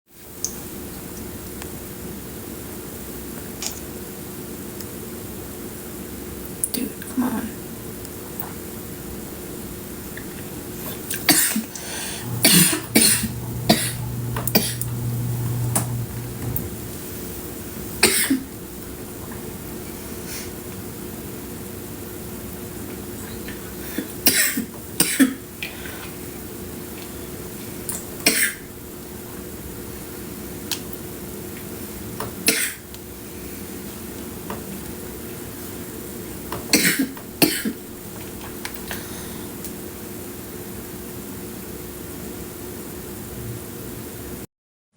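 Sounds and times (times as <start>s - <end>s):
steady low hum: 9.9s - 22.1s
woman coughing hard: 12.4s - 14.8s, 18.0s - 18.4s, 24.3s - 25.4s, 36.7s - 37.8s.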